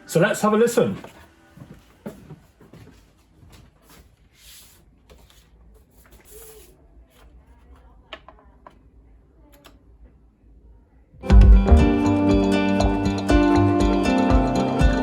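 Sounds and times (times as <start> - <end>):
soft rustles: 0.8 - 7.8.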